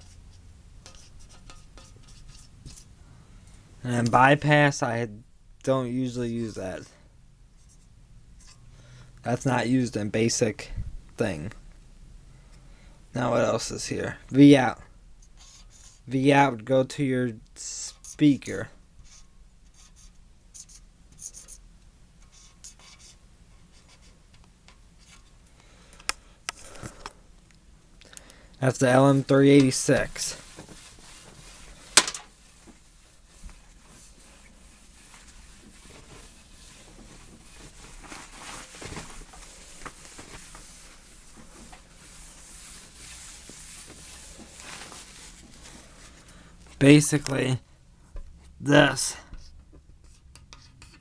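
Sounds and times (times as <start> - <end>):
pen scratching on paper: 22.3 - 24.1.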